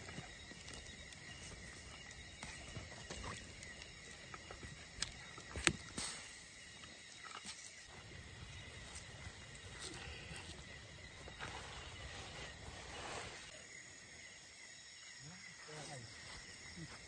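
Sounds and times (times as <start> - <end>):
forest insects droning: 0.0 - 17.0.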